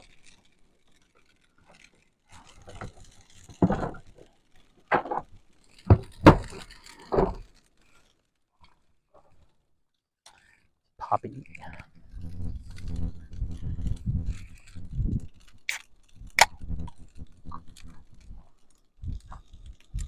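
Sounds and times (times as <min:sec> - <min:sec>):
objects knocking and clattering: 0:02.7 - 0:04.2, 0:04.9 - 0:07.5.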